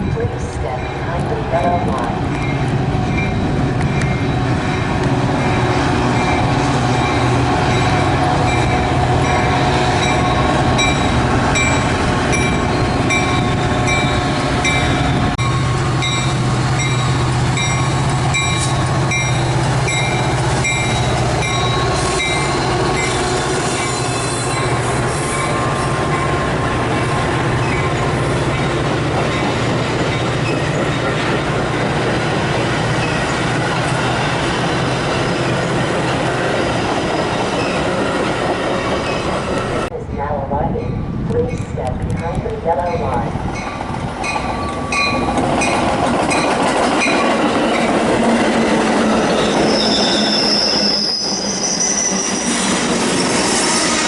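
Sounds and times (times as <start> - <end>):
train wheels rolling: 0.0 - 39.9, 41.2 - 54.0
diesel locomotive engine hum: 0.0 - 54.0
train wheel squeal: 16.0 - 26.3, 27.6 - 31.2, 36.4 - 39.9, 43.6 - 54.0.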